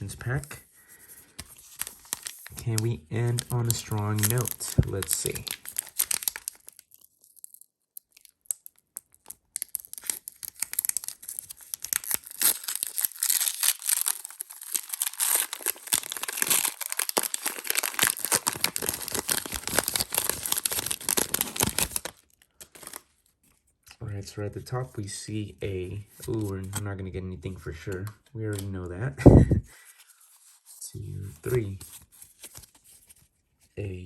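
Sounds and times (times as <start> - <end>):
foil wrapper tearing and crinkling: 1.3 - 23.2.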